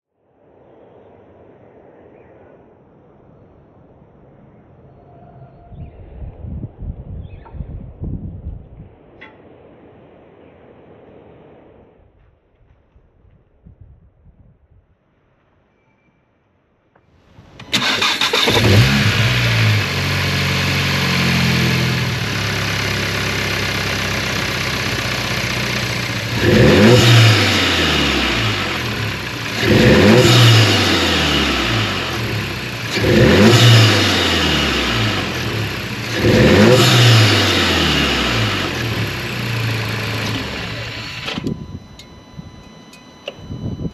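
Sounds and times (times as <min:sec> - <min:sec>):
loud engine intake noise: 0:17.5 - 0:43.5
car engine starting and revving: 0:17.5 - 0:43.6.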